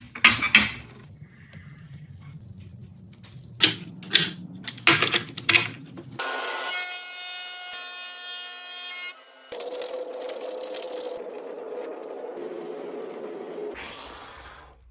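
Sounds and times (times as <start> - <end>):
machine whine: 0.8 - 6.8, 9.2 - 14.9.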